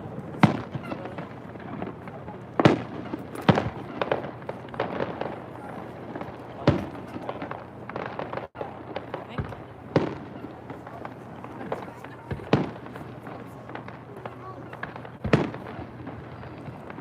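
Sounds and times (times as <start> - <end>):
fireworks bangs: 0.0 - 17.0.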